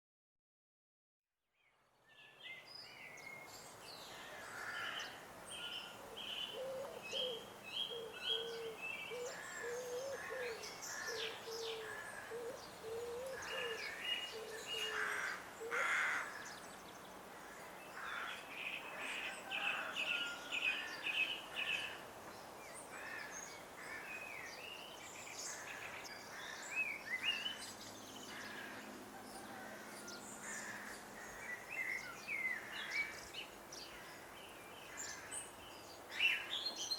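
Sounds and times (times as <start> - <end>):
birds singing and chirping: 2.2 - 36.9
lower repeated bird call: 6.1 - 16.4.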